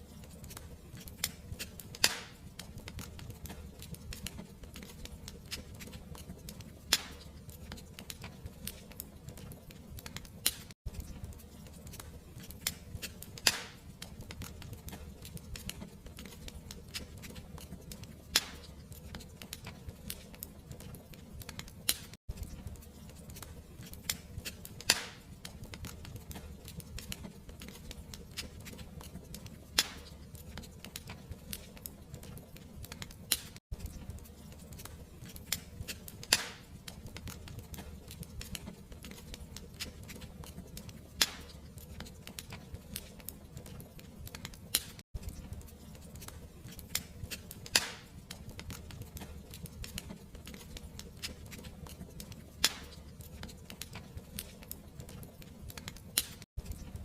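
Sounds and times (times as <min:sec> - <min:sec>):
fireplace fire crackling: 0:00.0 - 0:57.0
sharp pop of fire: 0:02.0 - 0:02.4, 0:13.4 - 0:13.8, 0:24.9 - 0:25.2, 0:36.2 - 0:36.6, 0:47.7 - 0:48.1.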